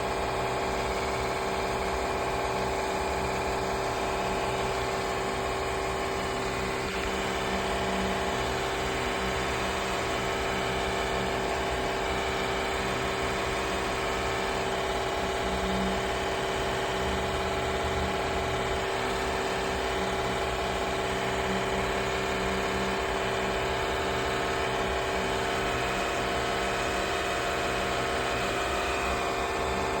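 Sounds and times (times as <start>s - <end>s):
electric fan whirring: 0.0s - 30.0s.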